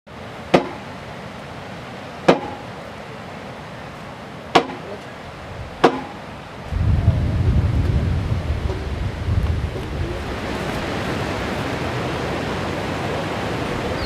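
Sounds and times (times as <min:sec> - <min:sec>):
steady background hiss: 0:00.1 - 0:14.0
sharp ringing knocks: 0:05.8 - 0:06.2.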